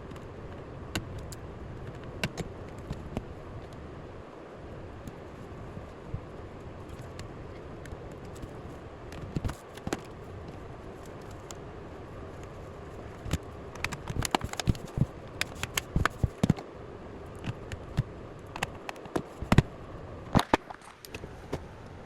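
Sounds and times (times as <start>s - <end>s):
clicks handling laptop parts: 0.9s - 3.8s, 9.1s - 10.2s, 13.2s - 16.6s, 17.4s - 19.7s.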